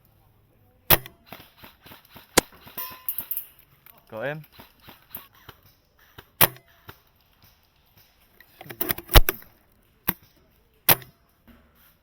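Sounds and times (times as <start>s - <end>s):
airsoft rifle shots snapping: 2.4s - 3.4s, 8.8s - 9.5s
metallic clicks of rifle action: 8.4s - 9.5s, 10.9s - 11.2s.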